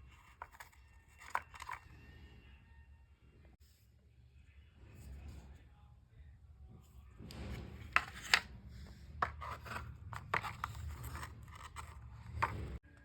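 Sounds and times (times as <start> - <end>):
rustling and rubbing: 0.0 - 1.9, 7.2 - 12.8.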